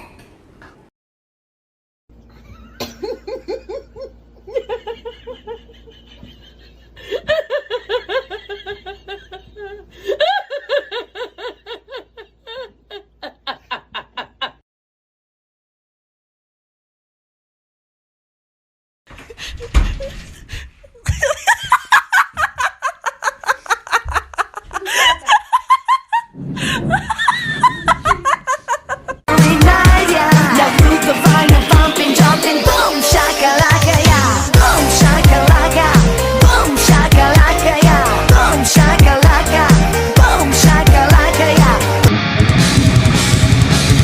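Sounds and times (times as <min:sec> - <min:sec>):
person laughing hard: 0:02.4 - 0:14.6, 0:21.0 - 0:31.8.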